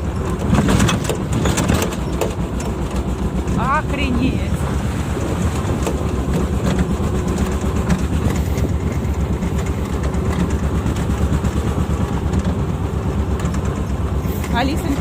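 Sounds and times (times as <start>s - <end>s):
heavy vehicle engine rumbling: 0.0s - 15.0s.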